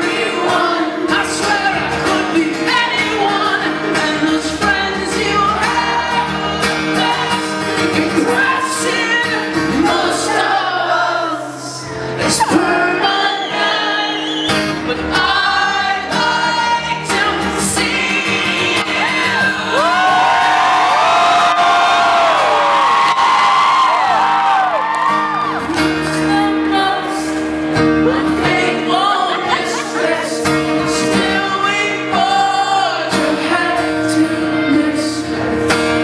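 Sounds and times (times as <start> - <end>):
man singing: 0.0 - 21.8, 26.0 - 36.0
strummed acoustic guitar: 0.0 - 36.0.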